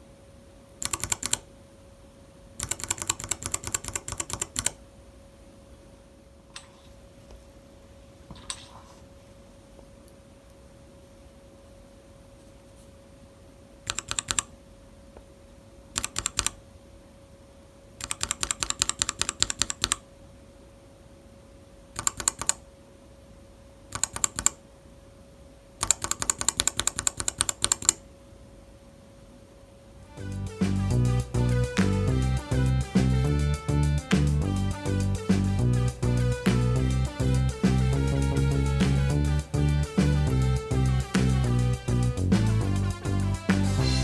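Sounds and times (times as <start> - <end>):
mechanical keyboard typing: 0.8 - 1.4, 2.6 - 4.8, 13.9 - 14.5, 16.0 - 16.6, 18.0 - 20.0, 22.0 - 22.6, 23.9 - 24.6, 25.8 - 28.0.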